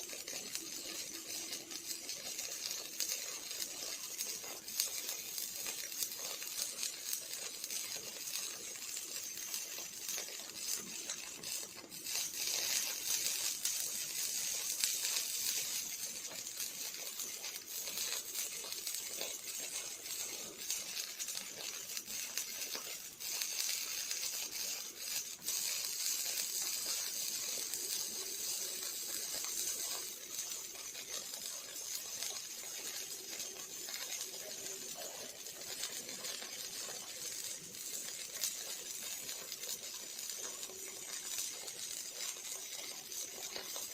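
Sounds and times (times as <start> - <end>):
welding arc crackling hiss: 0.0 - 43.9
spatter pops: 9.9 - 43.9.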